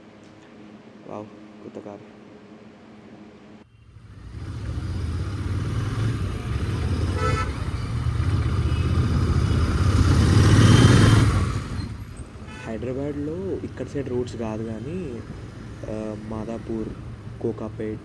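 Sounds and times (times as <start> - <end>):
motorcycle engine running: 3.9 - 17.7
vehicle horn toot: 7.0 - 7.9, 12.4 - 12.9.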